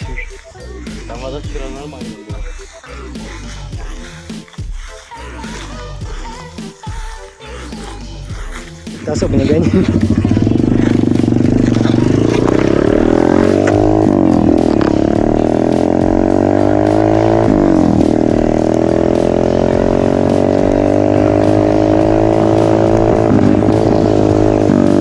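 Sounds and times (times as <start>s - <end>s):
motocross bike engine accelerating: 9.0s - 25.0s.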